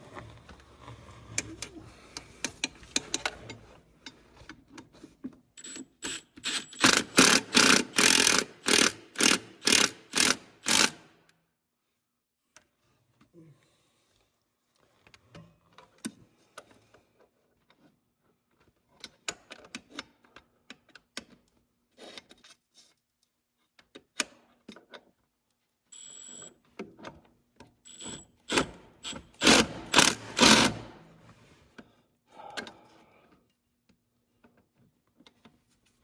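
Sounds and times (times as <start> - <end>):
impact wrench bursts: 5.6 - 11.1, 26.0 - 26.5, 27.9 - 31.1.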